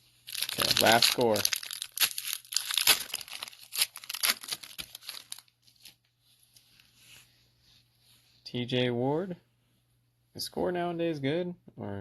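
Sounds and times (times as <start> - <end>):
plastic wrapper tearing and crinkling: 0.2 - 6.0
cards rustling: 0.3 - 7.0.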